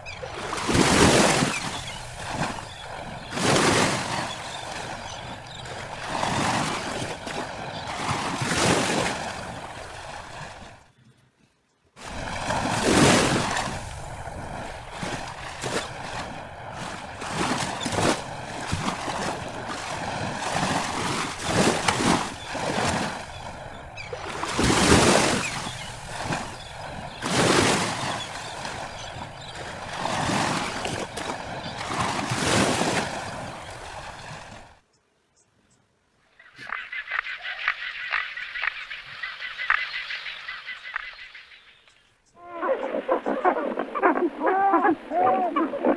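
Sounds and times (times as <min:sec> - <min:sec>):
sea surf washing in: 0:12.0 - 0:29.0, 0:42.6 - 0:45.9.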